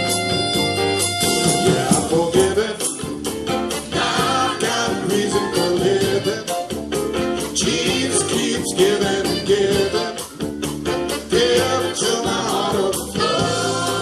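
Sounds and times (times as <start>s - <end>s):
live band music: 0.0s - 14.0s
person singing: 1.4s - 3.0s, 4.0s - 6.7s, 7.6s - 10.4s, 11.1s - 14.0s.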